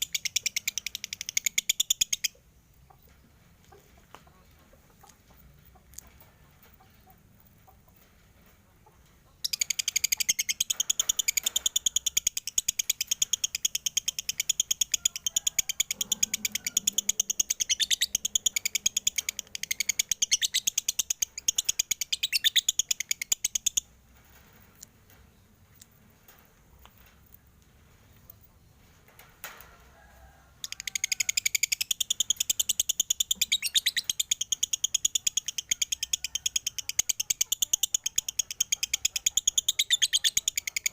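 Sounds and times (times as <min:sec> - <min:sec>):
lovebird chirping rapidly: 0:00.0 - 0:02.4, 0:09.4 - 0:23.9, 0:30.8 - 0:40.9.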